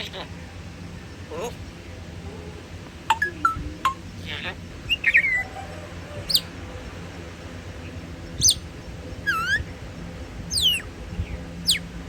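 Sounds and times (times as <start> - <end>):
parrot low dipping call: 9.3 - 9.7, 10.5 - 10.8, 11.6 - 11.9.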